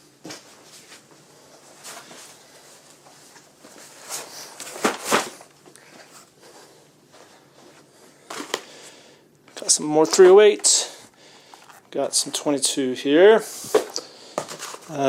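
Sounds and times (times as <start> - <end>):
ammunition boxes knocking and rustling: 3.3 - 6.4, 7.7 - 8.8, 13.6 - 15.0.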